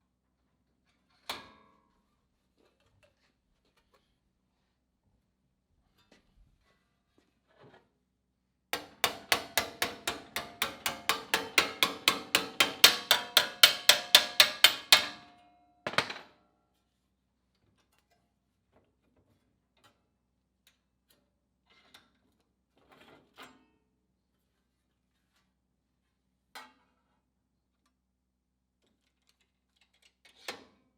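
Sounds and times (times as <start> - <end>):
hammer ringing on sheet steel: 8.8 - 16.2.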